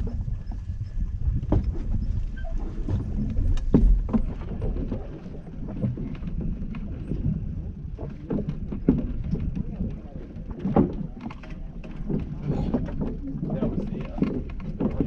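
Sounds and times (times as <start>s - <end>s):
boat engine rumble: 0.0s - 15.0s
knocks and clicks of gear: 1.4s - 5.0s.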